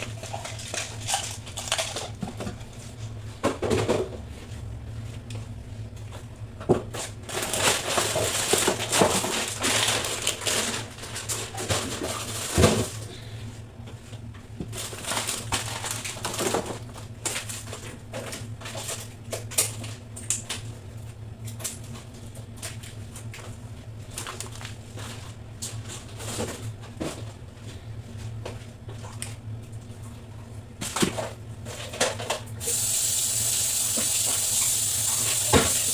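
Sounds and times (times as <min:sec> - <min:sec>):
items clicking and clattering: 0:00.0 - 0:04.1, 0:06.7 - 0:13.0, 0:14.6 - 0:20.6.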